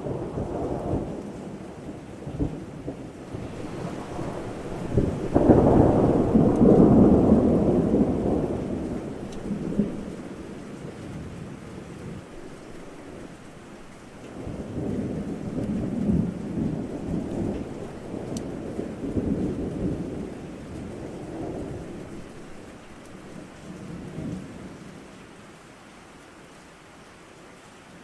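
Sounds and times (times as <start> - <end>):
rolling thunder: 0.0 - 12.4, 14.2 - 22.8
steady rain: 0.0 - 28.0.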